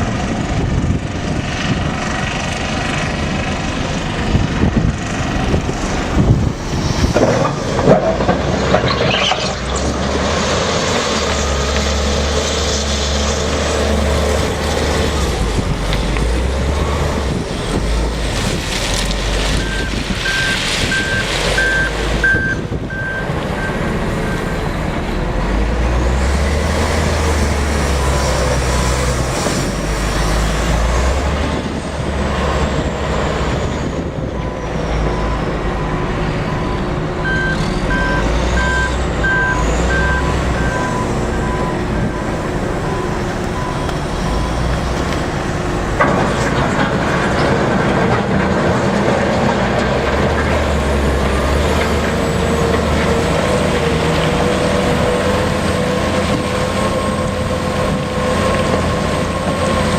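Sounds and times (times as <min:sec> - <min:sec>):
diesel engines running: 0:00.0 - 0:59.9
high reversing alarm beeping: 0:19.5 - 0:24.7, 0:35.1 - 0:44.7
low reversing alarm beeping: 0:19.5 - 0:24.7, 0:35.0 - 0:44.7.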